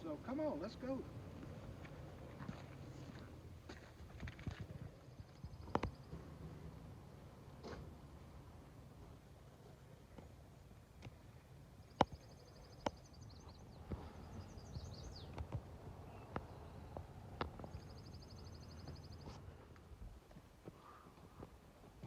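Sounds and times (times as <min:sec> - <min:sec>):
footsteps on trail: 0:01.3 - 0:05.8, 0:18.8 - 0:22.0.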